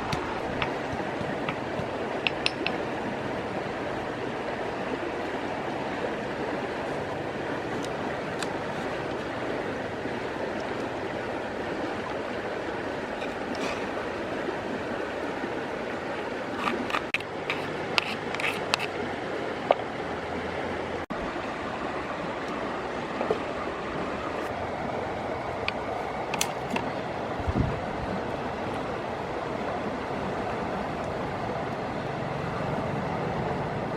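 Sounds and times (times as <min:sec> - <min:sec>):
river rushing: 0:00.0 - 0:33.9
sharp clicks and taps: 0:00.1 - 0:02.8.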